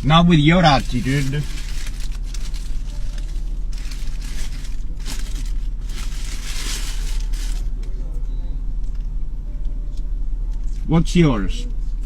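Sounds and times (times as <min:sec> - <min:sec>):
crackling rustle: 0:00.0 - 0:08.0
car engine idling: 0:00.0 - 0:12.0.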